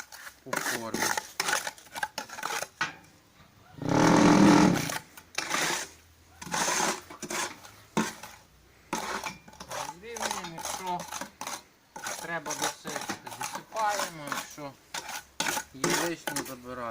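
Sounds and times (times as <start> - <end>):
gravel scraped across steel mould: 0.0 - 2.8, 3.8 - 16.9
rattling scrape: 3.8 - 16.6.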